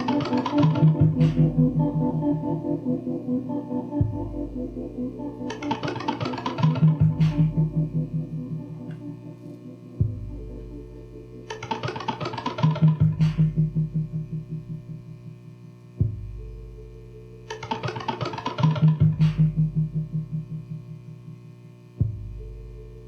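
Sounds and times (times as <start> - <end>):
sustained drone: 0.0 - 15.5
pulsing distorted tones: 0.0 - 18.0.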